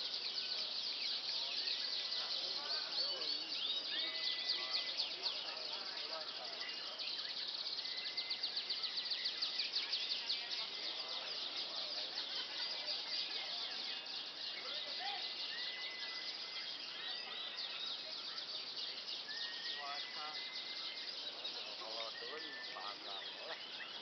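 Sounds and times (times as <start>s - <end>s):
canary singing trills: 0.0s - 24.0s.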